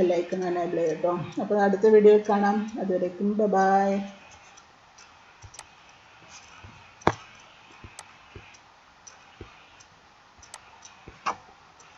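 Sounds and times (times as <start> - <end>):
irregular clicks and light taps: 4.1 - 11.9.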